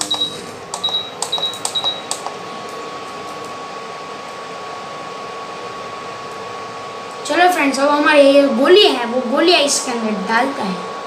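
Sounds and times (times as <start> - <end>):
button clicks with high beeps: 0.0 - 2.3
cooling fan whirring: 0.0 - 11.0.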